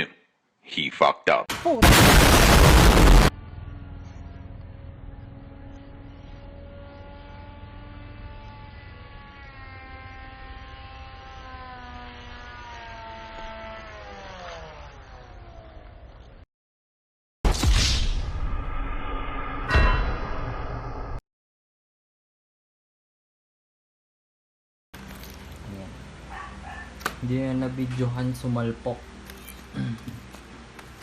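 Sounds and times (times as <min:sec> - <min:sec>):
electric motor and propeller whining: 0:03.3 - 0:16.4, 0:25.0 - 0:27.2.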